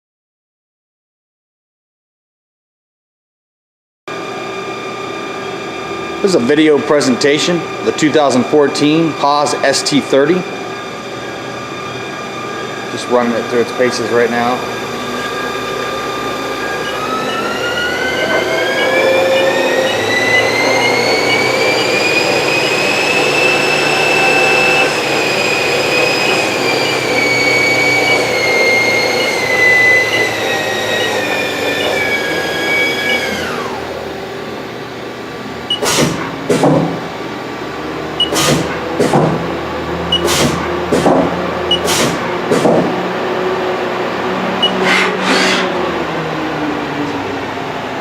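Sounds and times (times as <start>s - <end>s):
lathe spindle whine: 4.1s - 48.0s
sharp clunks: 35.7s - 37.1s, 38.3s - 39.5s, 40.2s - 43.0s.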